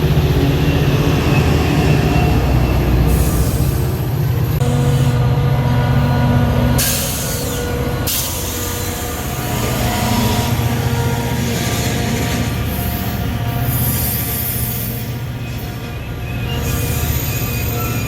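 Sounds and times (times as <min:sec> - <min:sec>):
train running hum: 0:00.0 - 0:18.0.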